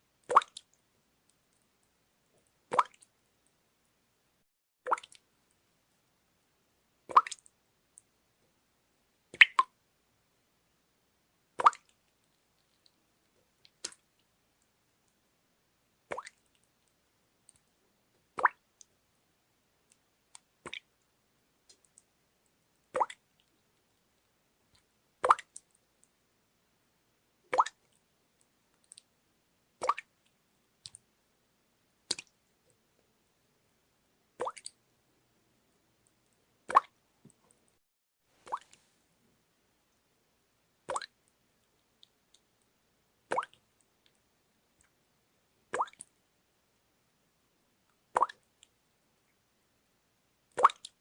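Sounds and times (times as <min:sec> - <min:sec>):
water drops plopping: 0:40.9 - 0:41.1, 0:48.2 - 0:48.4, 0:50.6 - 0:50.9.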